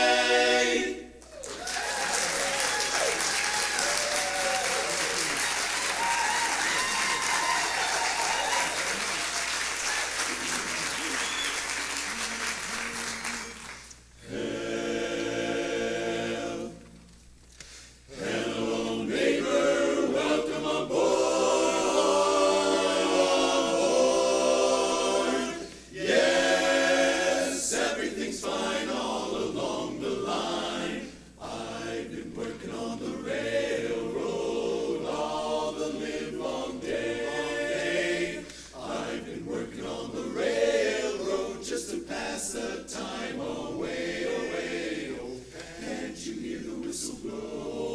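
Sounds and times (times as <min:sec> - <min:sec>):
barbershop chorus singing a cappella: 0:00.0 - 0:01.2, 0:12.2 - 0:17.0, 0:18.1 - 0:47.9.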